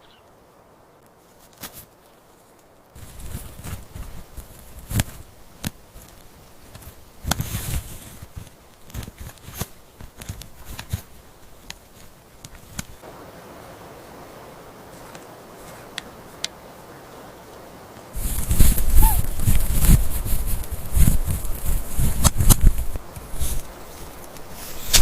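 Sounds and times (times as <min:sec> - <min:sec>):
rustling burst: 0:18.1 - 0:25.0
sharp clicks and crackles: 0:18.3 - 0:25.0.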